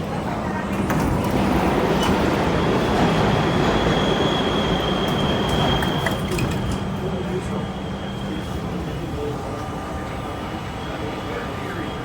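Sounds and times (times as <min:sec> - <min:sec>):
wheels rumbling on rail: 0:00.0 - 0:11.8
high wheel squeal: 0:02.0 - 0:09.0.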